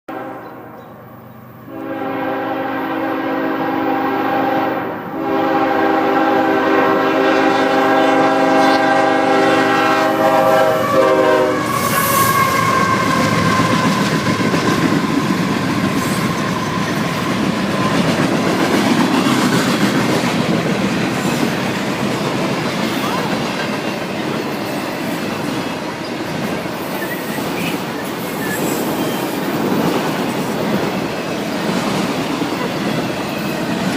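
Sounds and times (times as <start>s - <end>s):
locomotive air horn: 0.1s - 0.8s, 1.7s - 14.0s
train wheels rumbling and clacking: 10.8s - 33.9s.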